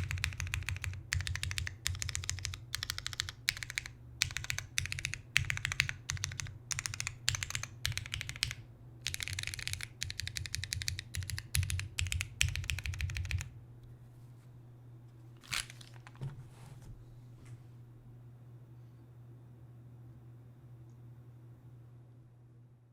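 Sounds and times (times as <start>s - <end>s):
mechanical keyboard key presses: 0.0s - 13.5s.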